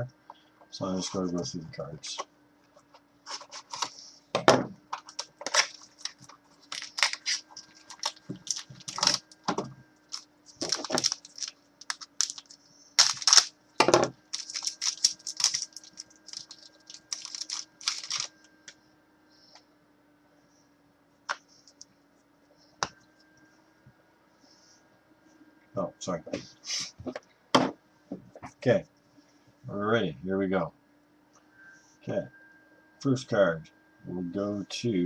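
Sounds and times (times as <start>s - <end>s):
card packs crackling and rustling: 5.0s - 9.4s, 10.0s - 13.6s, 14.2s - 18.3s.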